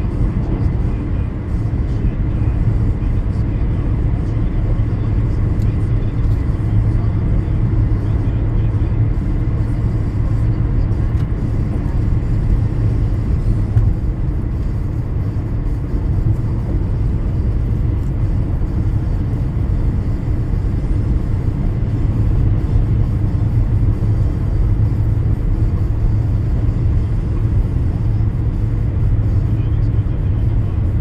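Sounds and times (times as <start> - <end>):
car driving on wet road: 0.0 - 31.0.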